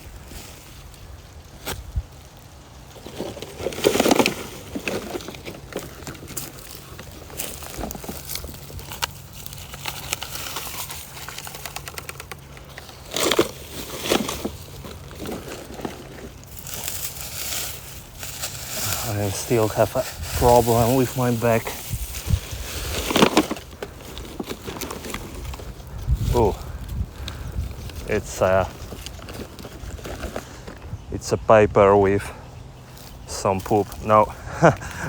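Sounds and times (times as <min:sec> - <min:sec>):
litter crinkling in a bag: 0:02.9 - 0:30.8.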